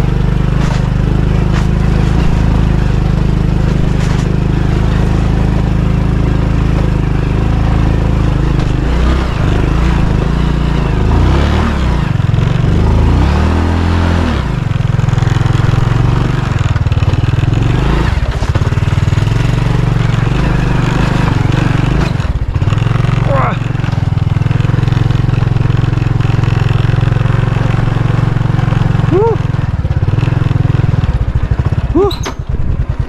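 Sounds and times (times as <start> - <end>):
motorcycle engine revving: 0.0 - 33.0.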